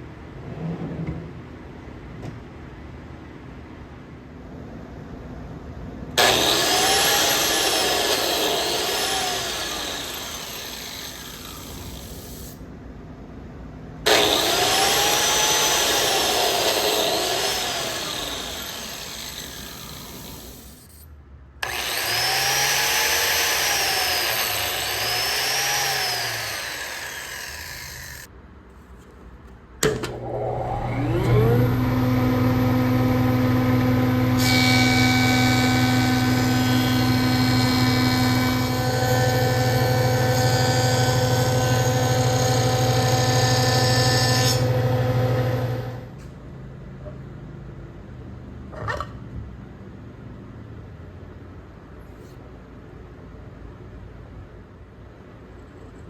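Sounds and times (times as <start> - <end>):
power tool cutting wood: 6.2 - 12.6, 14.1 - 20.8, 21.6 - 28.3, 29.9 - 46.1
motor whine and hum: 21.6 - 28.3, 29.9 - 46.2.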